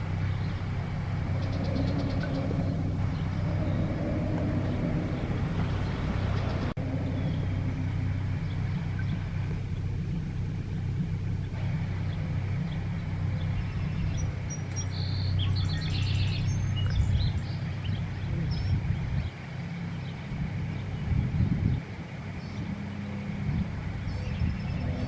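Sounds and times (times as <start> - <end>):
bird chirping: 0.0 - 25.0
low outdoor rumble: 0.0 - 25.0.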